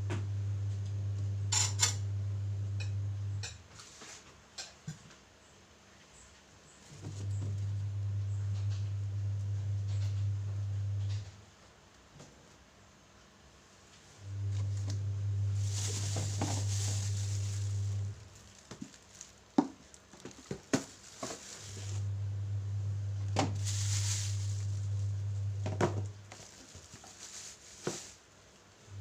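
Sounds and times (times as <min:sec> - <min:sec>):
steady low hum: 0:00.0 - 0:03.6, 0:14.2 - 0:18.6, 0:21.6 - 0:26.3
objects knocking and scraping: 0:14.3 - 0:22.1, 0:23.3 - 0:28.2
hissing or rubbing: 0:15.4 - 0:18.6, 0:23.5 - 0:25.4.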